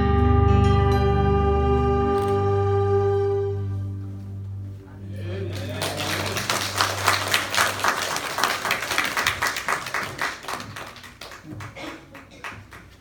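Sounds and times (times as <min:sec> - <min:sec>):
band holding low note: 0:00.0 - 0:07.8
crowd applauding: 0:05.1 - 0:13.0.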